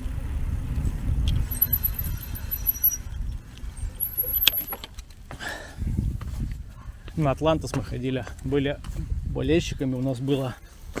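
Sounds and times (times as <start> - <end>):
wind and bicycle rolling noise: 0.0 - 11.0
sharp clicks: 1.2 - 4.9
high-pitched squeal: 1.3 - 4.8.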